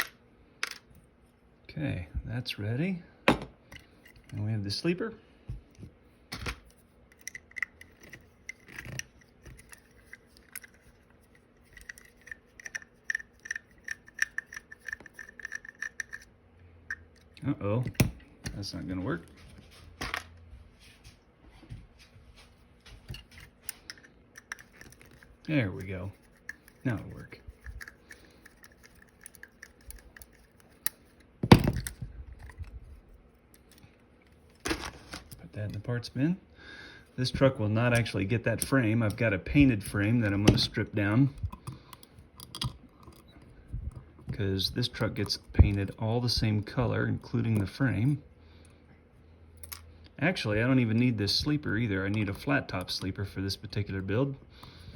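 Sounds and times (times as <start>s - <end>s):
parts clattering: 0.0s - 1.0s, 5.6s - 16.3s, 33.5s - 35.8s.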